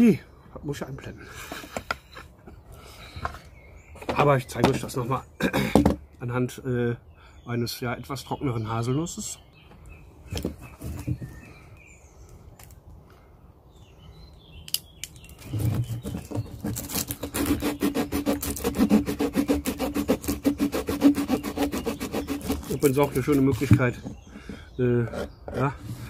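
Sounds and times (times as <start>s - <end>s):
saw rasping through stick: 15.7s - 26.0s.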